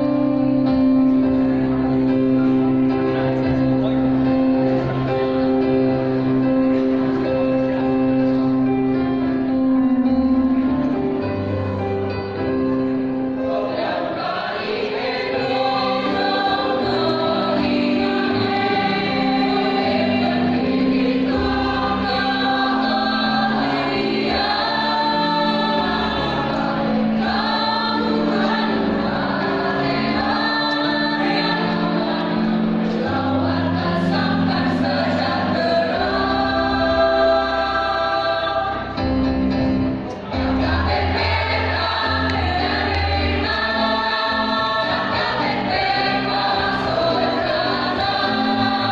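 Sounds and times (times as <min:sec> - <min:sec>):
choir singing in parts: 0:12.9 - 0:48.9.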